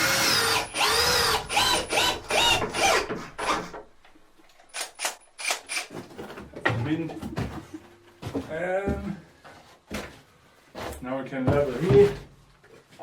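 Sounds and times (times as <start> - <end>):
cordless drill motor whine: 0.0 - 3.0.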